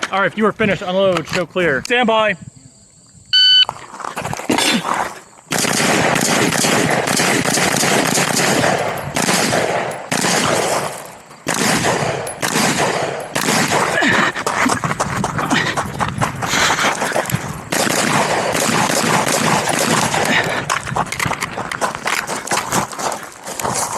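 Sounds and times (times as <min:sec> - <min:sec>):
rifle firing rapid shots: 0:05.5 - 0:14.2, 0:17.0 - 0:22.2.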